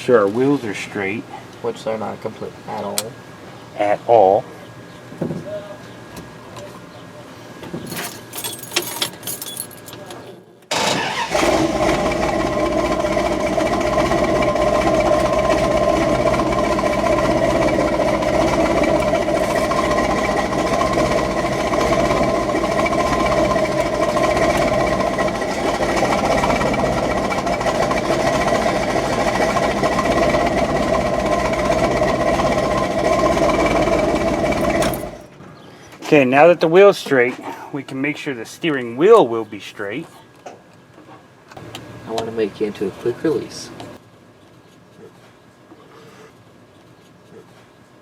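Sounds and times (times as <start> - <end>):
engine-like mechanical drone: 10.7 - 35.3.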